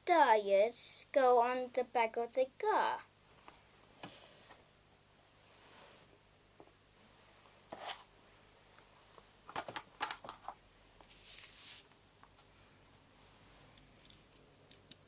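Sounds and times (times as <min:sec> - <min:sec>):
short rustle: 0:11.1 - 0:11.9.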